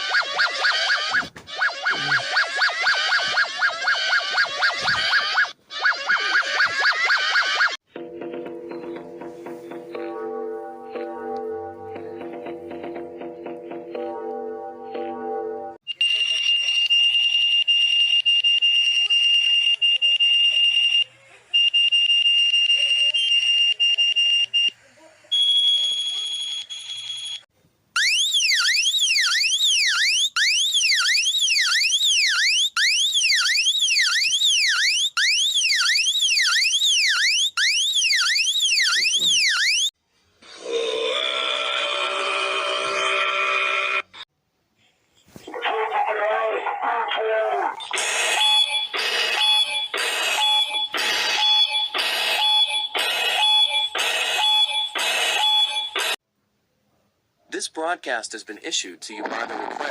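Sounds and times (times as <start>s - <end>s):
harsh buzzing alarm pulses: 0.0s - 6.4s, 48.0s - 56.2s
electronic siren wailing: 0.0s - 7.8s, 28.0s - 39.9s, 47.9s - 56.2s.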